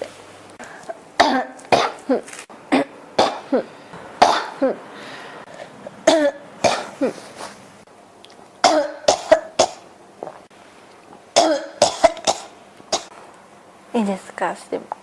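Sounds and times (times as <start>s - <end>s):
person coughing: 1.2s - 4.8s, 6.1s - 7.2s, 8.6s - 9.8s, 11.4s - 13.1s.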